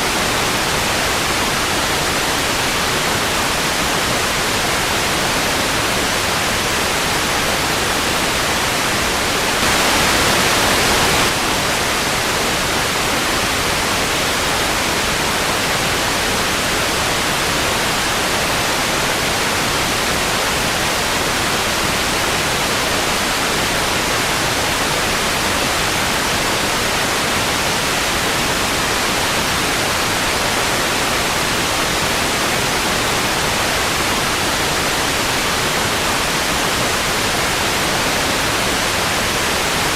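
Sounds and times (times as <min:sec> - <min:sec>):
tv static hiss: 0:00.0 - 0:39.9.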